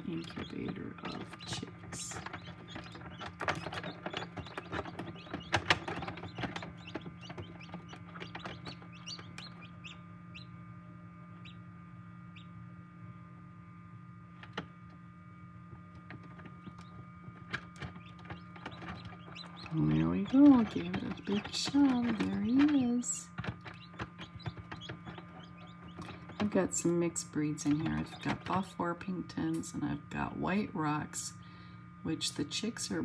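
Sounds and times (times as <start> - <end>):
chicks peeping: 0.0 - 12.7, 16.0 - 28.7
incubator low hum: 0.0 - 33.0.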